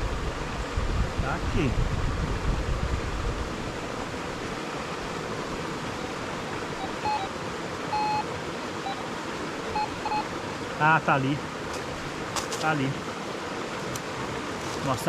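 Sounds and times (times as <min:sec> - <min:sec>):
small waterfall rushing: 0:00.0 - 0:15.0
metal detector beeps: 0:06.4 - 0:09.1, 0:09.7 - 0:10.3.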